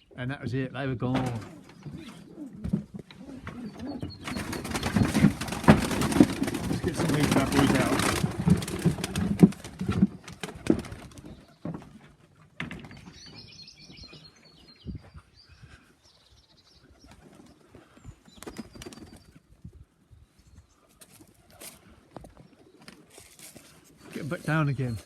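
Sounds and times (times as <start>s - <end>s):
pigeon wings flapping: 4.1s - 11.4s, 18.4s - 19.3s.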